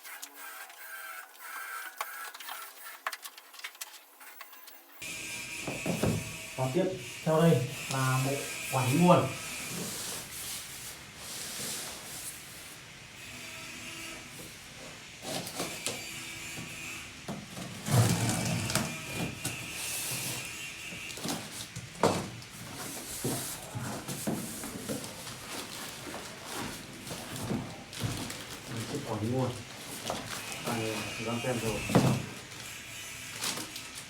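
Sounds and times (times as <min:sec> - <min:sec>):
packaging rustling and rubbing: 0:19.8 - 0:34.0.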